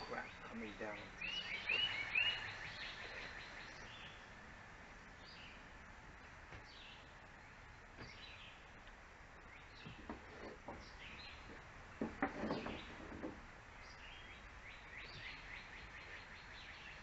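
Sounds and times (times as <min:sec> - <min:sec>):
outdoor background hiss: 0:00.0 - 0:17.0
songbird chirping: 0:00.0 - 0:17.0.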